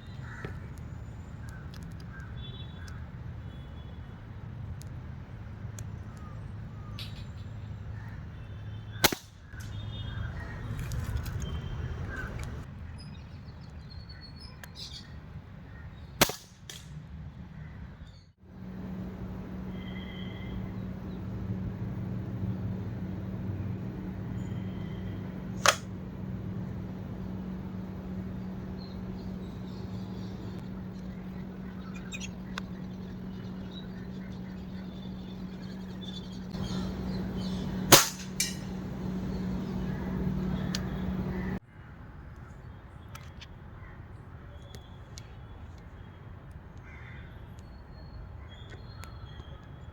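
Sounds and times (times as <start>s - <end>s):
air rifle shot crack: 9.0s - 9.7s, 16.2s - 16.9s, 25.6s - 25.9s, 37.8s - 38.7s
steady low hum: 18.4s - 41.6s
faint bird chirps: 19.7s - 20.8s
fainter sharp crack: 25.6s - 26.0s, 37.9s - 38.8s.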